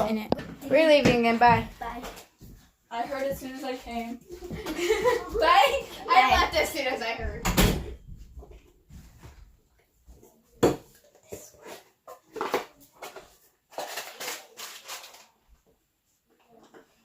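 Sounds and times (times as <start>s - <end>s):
household items clattering: 10.6s - 15.4s.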